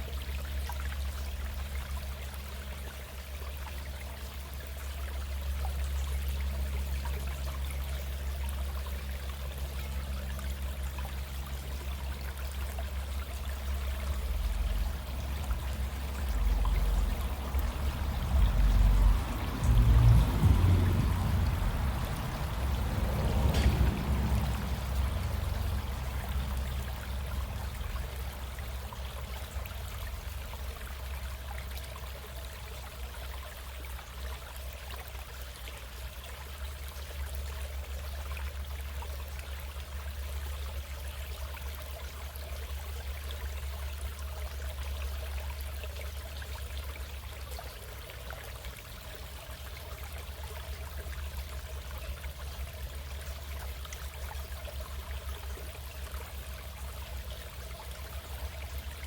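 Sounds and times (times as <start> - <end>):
stream water trickling: 0.0 - 59.0
low rumble: 13.9 - 28.4.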